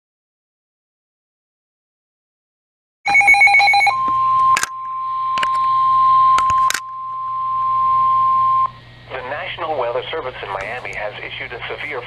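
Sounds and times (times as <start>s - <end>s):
steady alarm tone: 3.1s - 9.1s.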